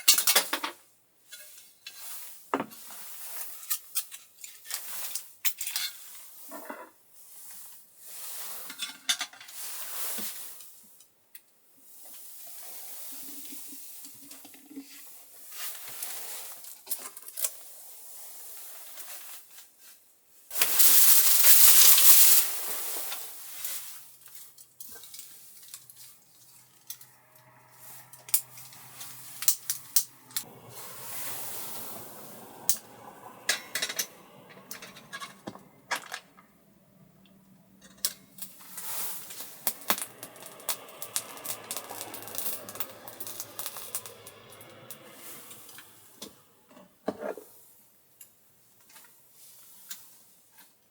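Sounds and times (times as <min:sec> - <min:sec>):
sizzling hiss: 0:20.6 - 0:46.6.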